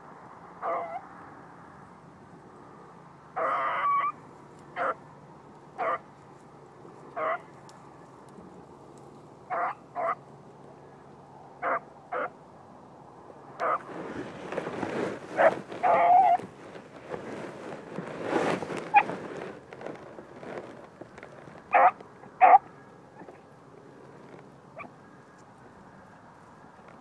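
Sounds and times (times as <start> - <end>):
rough noisy sound: 11.7 - 27.0.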